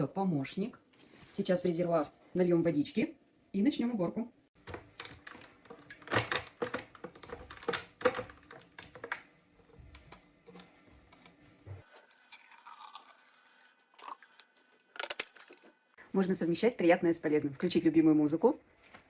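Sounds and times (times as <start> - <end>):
plastic clicks and knocks: 4.6 - 11.3.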